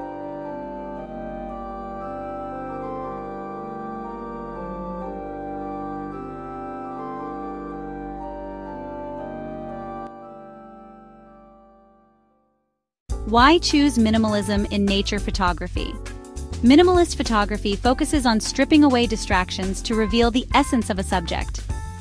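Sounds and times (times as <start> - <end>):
organ-like keyboard chords: 0.0 - 12.2.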